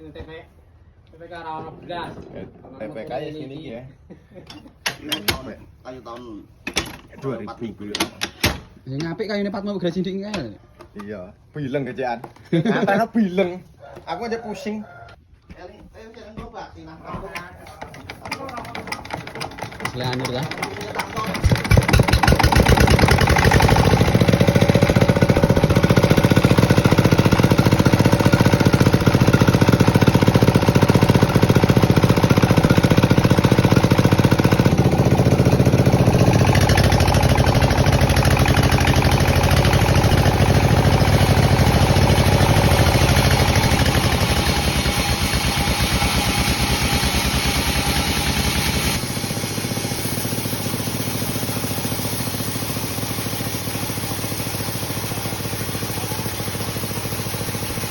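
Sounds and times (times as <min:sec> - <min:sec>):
sawmill machinery engine running: 0:17.7 - 0:57.9.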